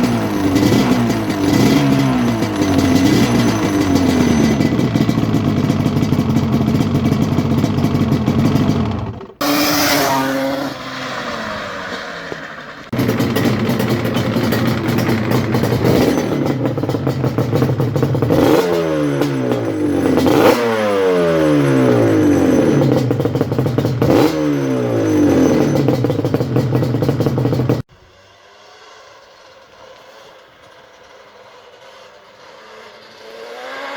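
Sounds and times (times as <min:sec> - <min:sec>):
two-stroke engine revving: 0:00.0 - 0:33.9.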